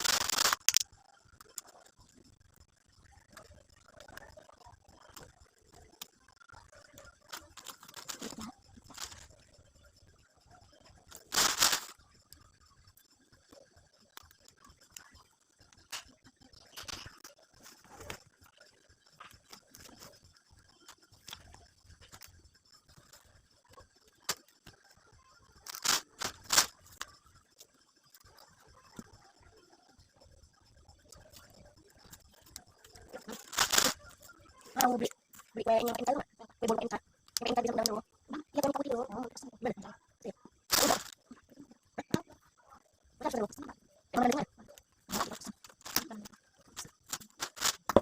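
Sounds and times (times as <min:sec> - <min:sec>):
packaging clicks and rustles: 0:00.0 - 0:01.7, 0:07.2 - 0:09.3, 0:11.2 - 0:12.0, 0:25.7 - 0:27.1, 0:32.0 - 0:36.1, 0:40.7 - 0:41.3, 0:45.1 - 0:48.0
small clicks and taps: 0:00.0 - 0:09.3
packaging crinkling rustle: 0:11.2 - 0:11.9, 0:25.7 - 0:26.8, 0:33.2 - 0:34.0, 0:45.1 - 0:48.0.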